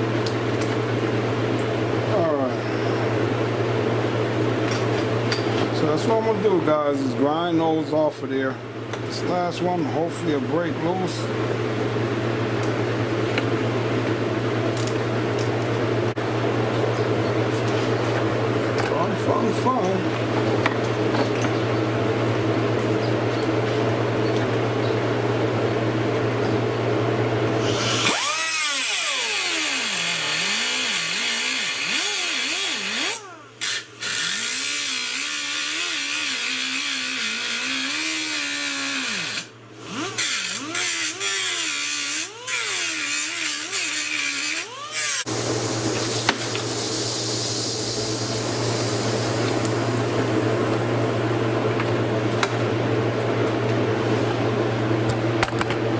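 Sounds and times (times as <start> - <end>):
steady background hum: 0.0 - 55.9
power grinder cutting metal: 27.6 - 45.4.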